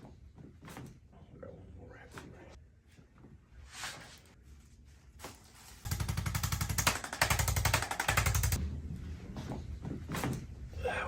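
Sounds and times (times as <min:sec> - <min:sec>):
massage gun hammering: 0:05.9 - 0:08.6.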